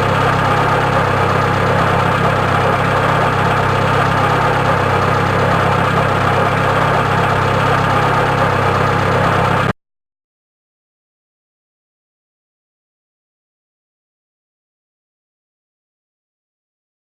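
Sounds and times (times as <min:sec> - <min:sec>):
car engine idling roughly: 0:00.0 - 0:09.8.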